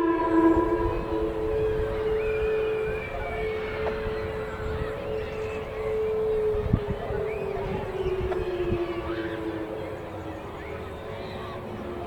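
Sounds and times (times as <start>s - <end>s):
warning siren winding down: 0.0s - 12.0s.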